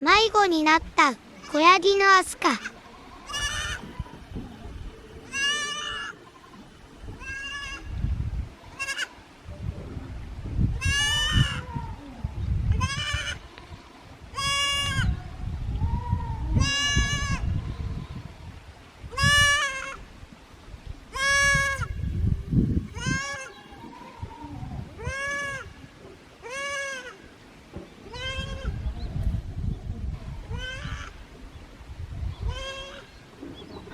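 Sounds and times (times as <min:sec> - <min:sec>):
kid goat bleating: 0:00.1 - 0:04.3, 0:05.3 - 0:06.1, 0:07.2 - 0:07.9, 0:08.7 - 0:09.1, 0:10.8 - 0:12.0, 0:12.7 - 0:18.3, 0:19.1 - 0:20.0, 0:21.1 - 0:21.9, 0:22.9 - 0:25.7, 0:26.4 - 0:27.2, 0:28.1 - 0:28.8, 0:30.2 - 0:31.2, 0:32.4 - 0:33.1.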